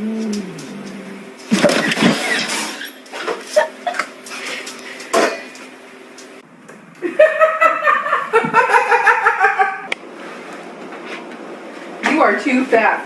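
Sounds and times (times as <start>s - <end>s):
person laughing rapidly: 7.0s - 9.9s.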